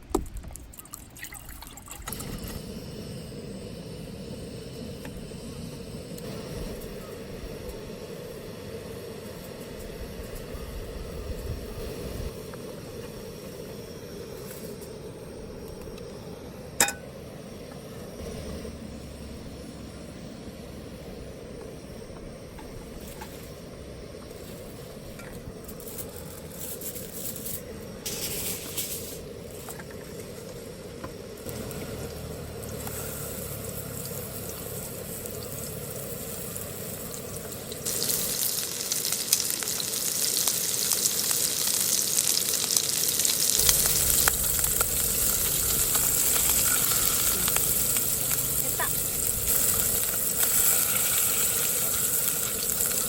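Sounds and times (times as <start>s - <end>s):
meat sizzling in a pan: 31.4s - 53.0s.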